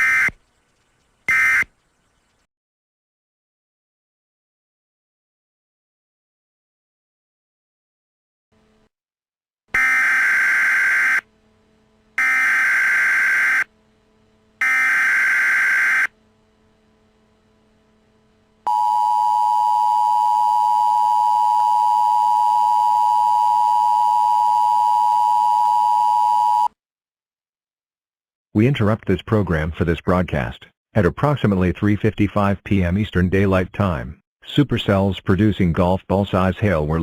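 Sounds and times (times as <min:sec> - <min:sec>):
digital data tone bursts: 0:00.0 - 0:01.7.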